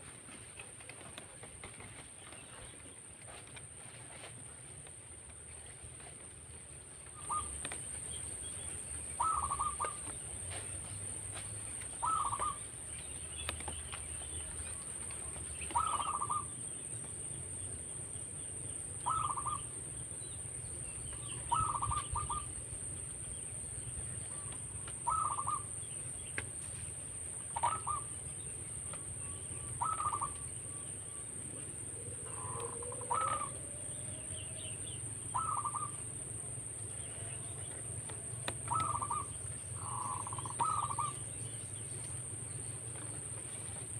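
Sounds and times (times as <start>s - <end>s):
steady high-pitched whine: 0.0s - 43.9s
dove cooing rolling notes: 7.1s - 8.0s, 8.9s - 10.7s, 11.9s - 12.8s, 15.1s - 16.7s, 19.0s - 19.9s, 21.2s - 23.0s, 24.2s - 25.8s, 27.4s - 43.9s.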